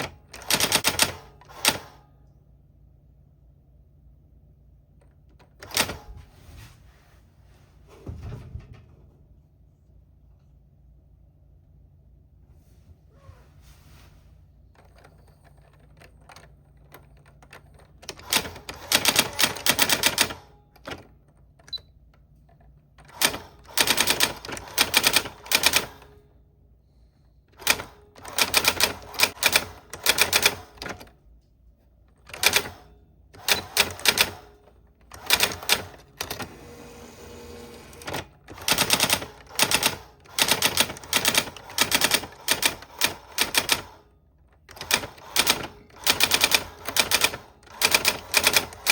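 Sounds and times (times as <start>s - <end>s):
typewriter keys clacking: 0.0s - 1.8s, 14.8s - 21.7s, 23.0s - 26.0s, 27.6s - 31.1s, 32.2s - 32.8s, 33.4s - 36.6s, 37.9s - 44.0s, 44.6s - 48.9s.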